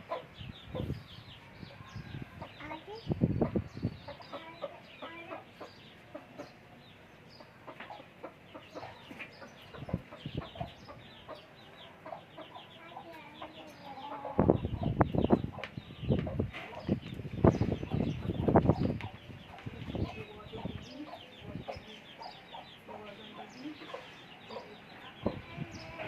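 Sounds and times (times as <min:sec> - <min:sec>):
chickens clucking: 0:00.0 - 0:26.0
chicks peeping: 0:00.0 - 0:26.0.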